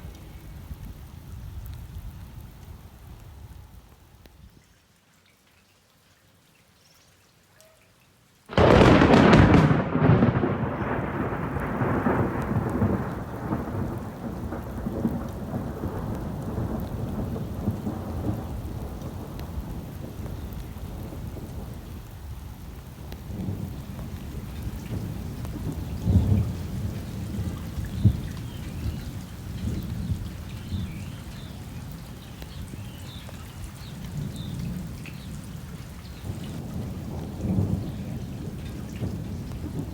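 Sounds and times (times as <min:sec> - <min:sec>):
steady rain: 0:00.0 - 0:39.9
thunderclap: 0:08.5 - 0:20.4, 0:36.6 - 0:39.9
low rumbles of thunder: 0:08.5 - 0:39.9.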